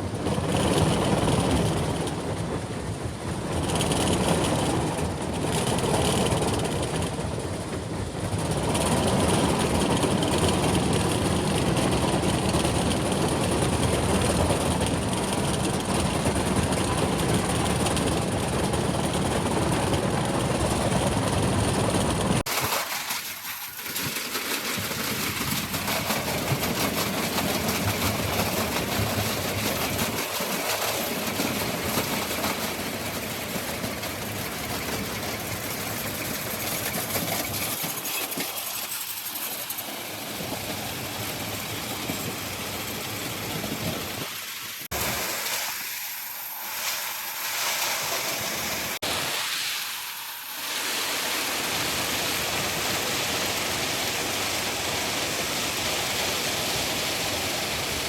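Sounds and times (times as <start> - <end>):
heavy machinery running: 24.8 - 58.0.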